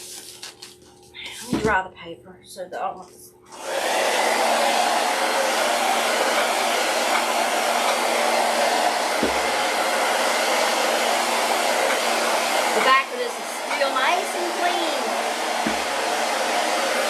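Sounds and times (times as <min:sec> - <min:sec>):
hair dryer blowing: 0:03.5 - 0:17.0
low thump: 0:09.2 - 0:09.5, 0:15.6 - 0:16.0.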